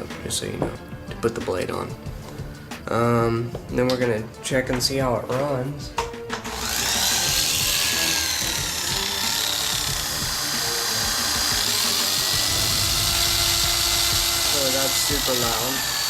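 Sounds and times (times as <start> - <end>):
hair clipper motor running: 6.4 - 16.0.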